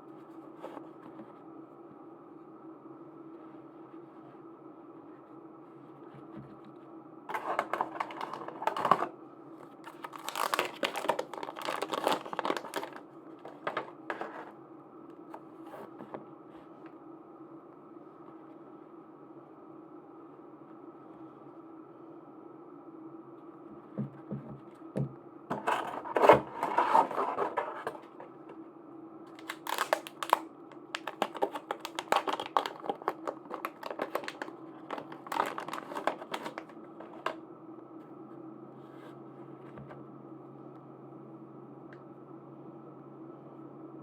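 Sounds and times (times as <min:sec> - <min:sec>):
faint steady hum: 0:00.0 - 0:44.0
plastic packaging crinkling: 0:07.3 - 0:09.1, 0:09.7 - 0:14.5, 0:25.5 - 0:28.4, 0:29.3 - 0:37.4.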